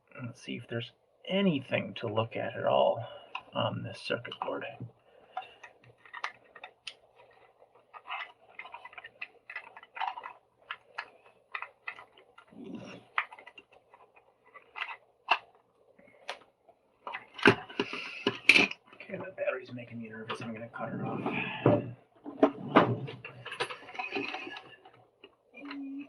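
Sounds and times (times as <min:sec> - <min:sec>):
small parts clicking and tapping: 0:05.3 - 0:19.1, 0:23.2 - 0:26.0.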